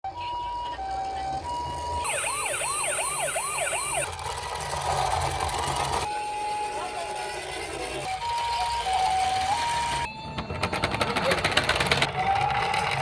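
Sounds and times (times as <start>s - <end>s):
two-tone siren: 0.1s - 4.1s
yelp siren: 0.7s - 4.1s
steady siren tone: 2.0s - 4.1s.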